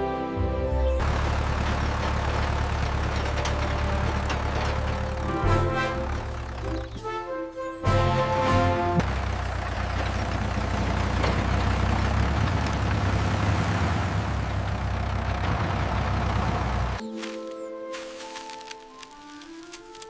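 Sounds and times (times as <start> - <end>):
music: 0.0 - 1.0, 3.6 - 9.0, 17.0 - 20.0
tractor engine rattling: 1.0 - 7.2, 7.9 - 17.4.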